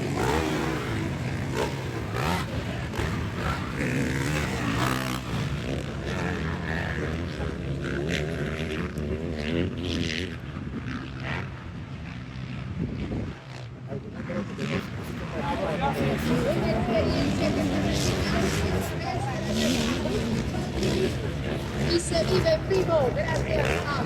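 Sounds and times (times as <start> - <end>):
dirt bike engines revving: 0.0 - 24.0.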